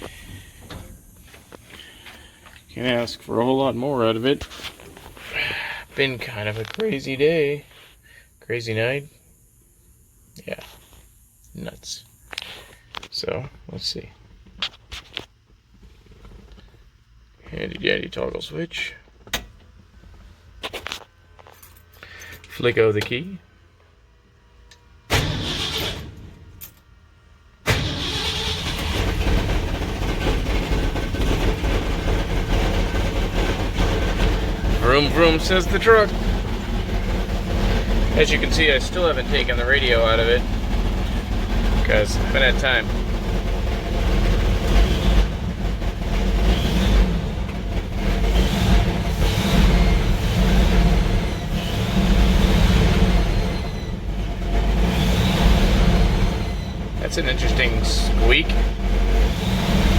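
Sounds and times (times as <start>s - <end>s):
engine cranking: 0.0s - 7.1s, 25.1s - 26.8s, 27.7s - 59.9s
engine running steadily: 0.0s - 13.1s, 27.6s - 59.9s.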